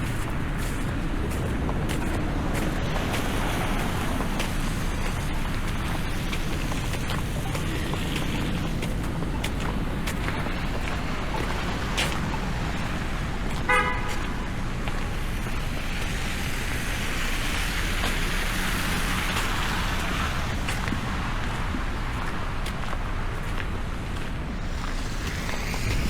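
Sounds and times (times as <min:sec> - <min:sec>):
street traffic noise: 0:00.0 - 0:26.0
short car horn toot: 0:13.7 - 0:14.1.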